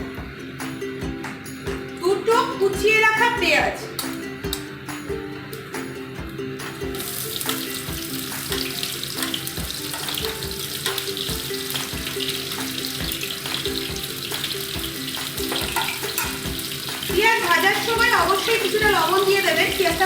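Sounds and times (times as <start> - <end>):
soft background music: 0.0 - 20.0
onions sizzling in hot oil: 6.6 - 20.0.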